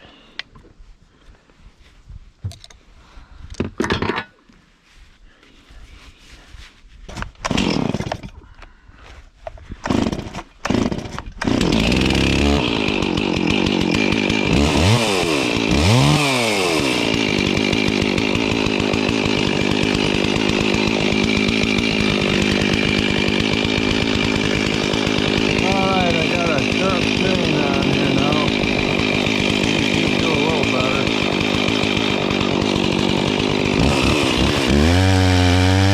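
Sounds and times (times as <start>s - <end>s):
chainsaw pull-start: 7.1s - 8.4s, 9.7s - 35.9s
chainsaw engine revving and running: 7.5s - 8.3s, 9.8s - 35.9s.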